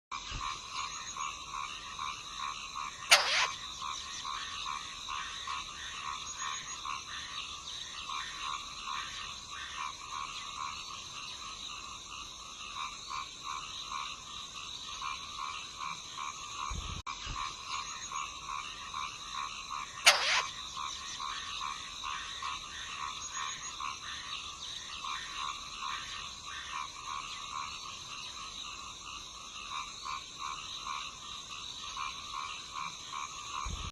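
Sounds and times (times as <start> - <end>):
loud downward sweeping bird calls: 3.1 - 3.6, 20.1 - 20.6
bird chicks begging calls: 20.1 - 20.5.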